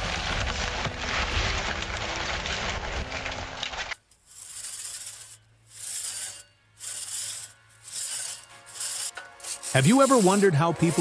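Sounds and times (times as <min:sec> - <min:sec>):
hand saw rasping through wood: 0:04.2 - 0:11.0.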